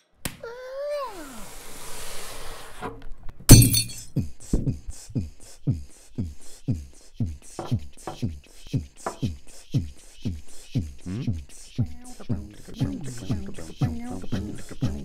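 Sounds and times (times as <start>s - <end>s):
glass shattering: 3.5s - 4.0s.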